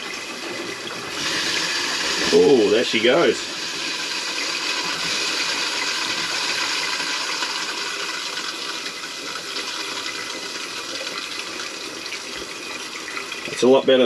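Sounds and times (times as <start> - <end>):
water running from tap: 0.0 - 14.0.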